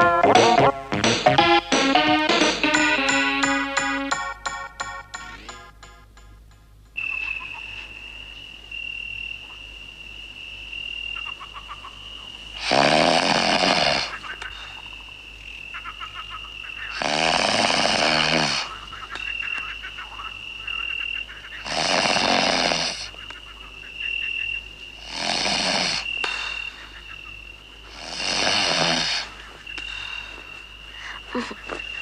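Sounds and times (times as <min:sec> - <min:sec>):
thin high tone: 0:01.6 - 0:09.8
man snoring: 0:12.6 - 0:14.1, 0:17.0 - 0:18.7, 0:21.6 - 0:23.1, 0:25.0 - 0:26.1, 0:27.9 - 0:29.3.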